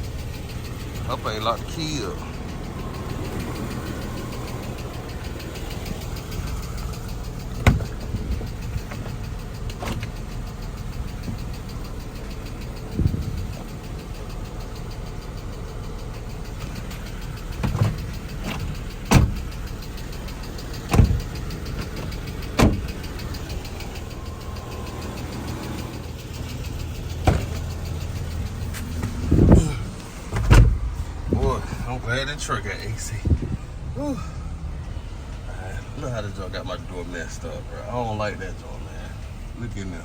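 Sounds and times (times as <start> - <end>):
car engine idling: 0.0 - 40.0
sharp knocks and clicks: 2.3 - 31.4.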